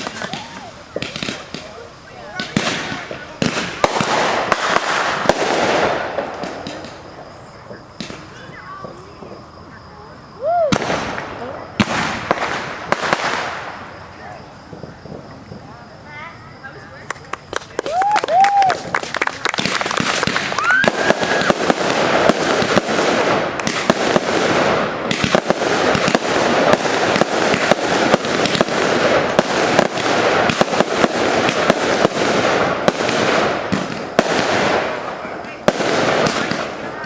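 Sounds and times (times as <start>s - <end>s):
firework rising whistle: 0.0s - 7.6s, 17.7s - 22.5s
fireworks bangs and crackling: 0.0s - 37.0s.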